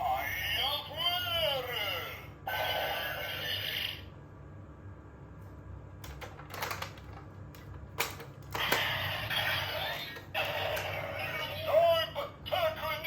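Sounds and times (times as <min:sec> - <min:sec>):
electronic toy sounds: 0:08.6 - 0:13.0.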